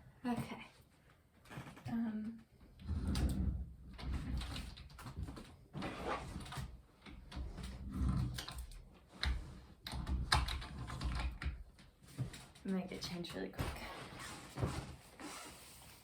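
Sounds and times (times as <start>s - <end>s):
knocks and rustles of handling: 4.0s - 16.0s.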